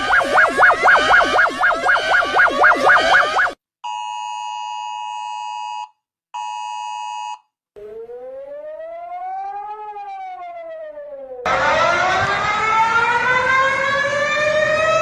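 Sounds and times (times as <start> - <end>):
siren wail: 0.0 - 3.6, 7.8 - 15.0.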